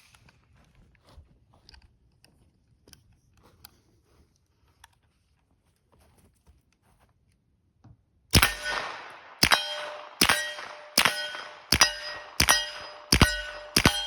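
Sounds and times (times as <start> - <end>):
gunshots: 8.4 - 14.0
ringing metallic clang: 8.4 - 14.0.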